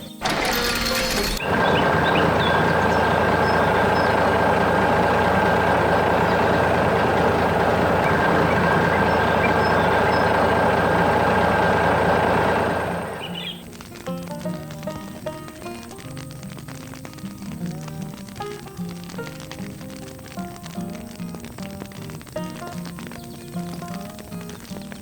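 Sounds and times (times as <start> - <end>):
heavy vehicle engine with whine: 0.2 - 13.6.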